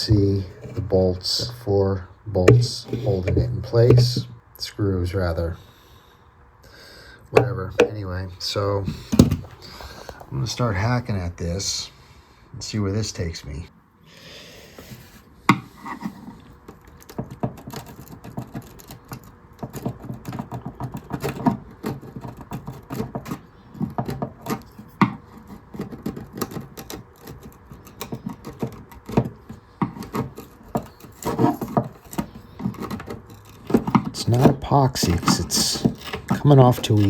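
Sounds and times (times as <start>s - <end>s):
hand tool scraping filler: 0.0s - 4.4s, 14.8s - 37.0s.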